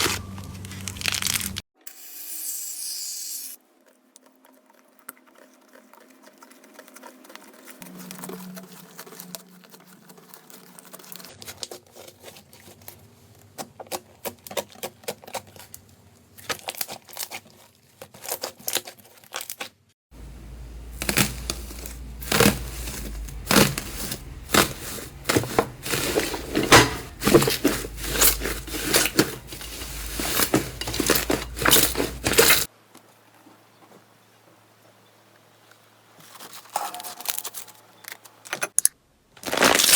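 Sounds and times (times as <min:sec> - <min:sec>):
slime crackling and popping: 0:00.6 - 0:01.6, 0:39.4 - 0:39.9.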